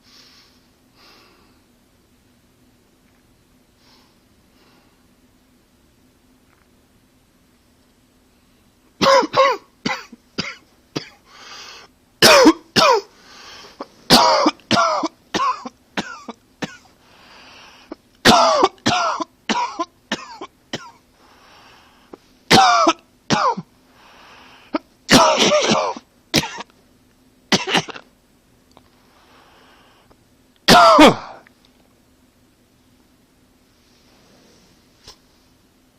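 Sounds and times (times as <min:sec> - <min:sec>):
man coughing: 0:09.0 - 0:11.2, 0:12.2 - 0:13.1, 0:14.1 - 0:16.9, 0:18.2 - 0:21.0, 0:22.5 - 0:23.7, 0:24.8 - 0:26.7, 0:27.5 - 0:28.0, 0:30.7 - 0:31.5.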